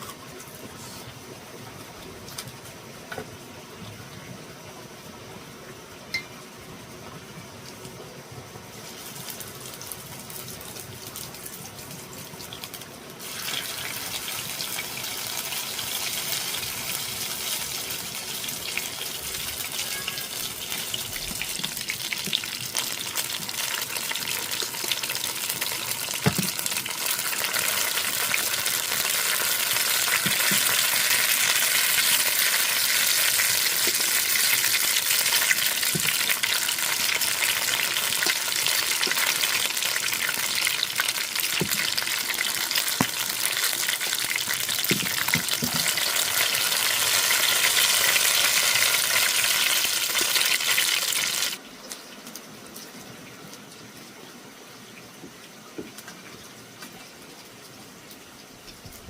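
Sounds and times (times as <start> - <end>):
oil sizzling in a frying pan: 8.7 - 52.0.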